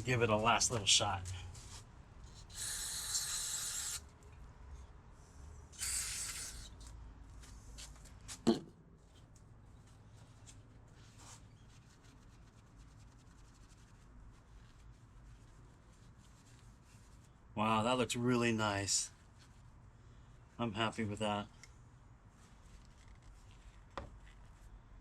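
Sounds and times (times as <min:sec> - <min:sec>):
aerosol spray hissing: 0:02.5 - 0:04.0, 0:05.8 - 0:06.7.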